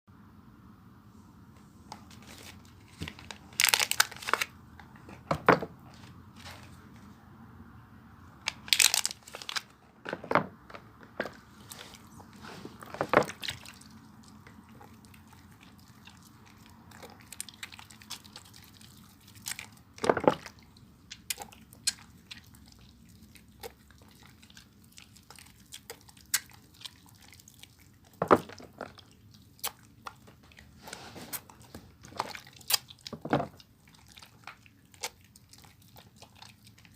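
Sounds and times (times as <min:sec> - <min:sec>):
soap crunching and crackling: 0:02.1 - 0:04.6, 0:08.5 - 0:09.7, 0:11.2 - 0:36.9.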